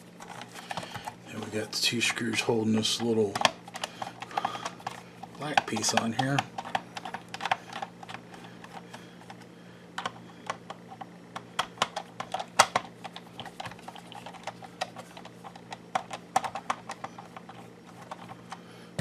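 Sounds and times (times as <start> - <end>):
screwdriver clicking on plastic: 2.7 - 9.4, 10.0 - 18.6.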